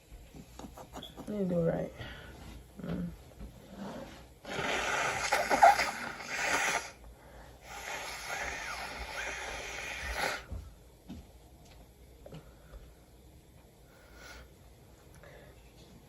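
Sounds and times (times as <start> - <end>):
person breathing and snorting: 1.9 - 10.6.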